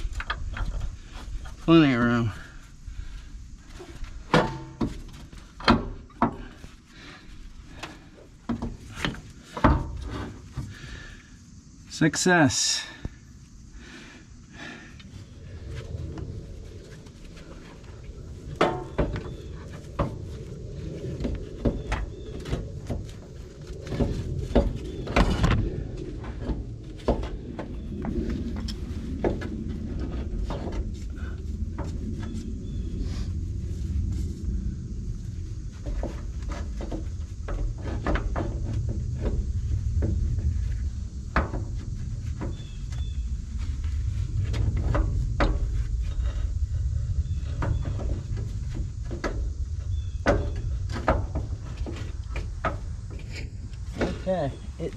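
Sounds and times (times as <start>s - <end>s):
steady low rumble: 0.0s - 54.9s
metal knocks and clunks: 4.2s - 6.6s, 7.8s - 10.7s, 18.4s - 20.3s, 21.2s - 28.2s, 35.8s - 40.7s, 47.5s - 54.8s.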